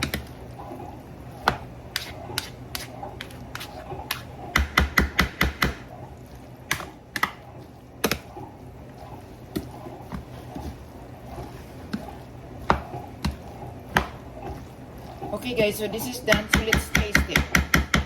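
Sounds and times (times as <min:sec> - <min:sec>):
utensils knocking against bowl: 0:16.3 - 0:18.0.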